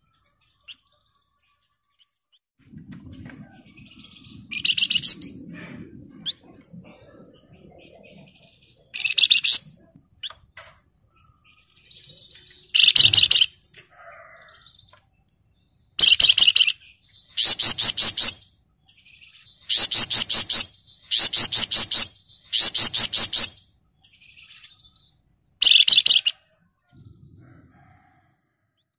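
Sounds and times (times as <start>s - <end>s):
faint bird twittering: 3.4s - 15.0s, 16.0s - 28.3s
songbird rattling trills: 11.1s - 13.9s.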